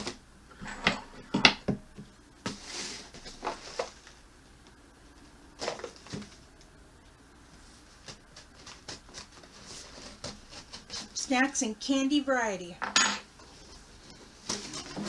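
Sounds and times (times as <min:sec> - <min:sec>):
scraping rustle of cardboard: 0:02.5 - 0:04.2, 0:07.6 - 0:11.2.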